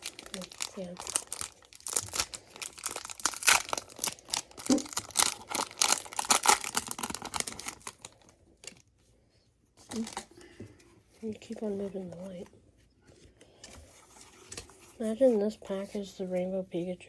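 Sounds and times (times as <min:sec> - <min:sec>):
foil wrapper tearing and crinkling: 0:00.0 - 0:08.8, 0:09.9 - 0:10.3.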